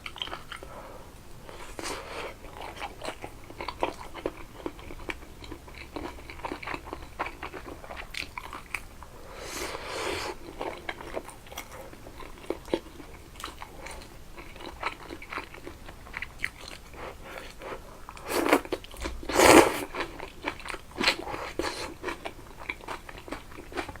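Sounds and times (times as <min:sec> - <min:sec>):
chewing and crunching food: 0:00.0 - 0:24.0.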